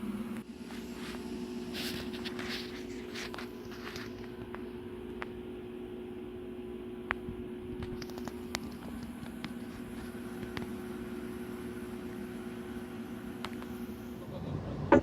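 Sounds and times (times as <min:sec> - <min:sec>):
low mechanical hum: 0:00.0 - 0:15.0
low rumble: 0:14.0 - 0:15.0.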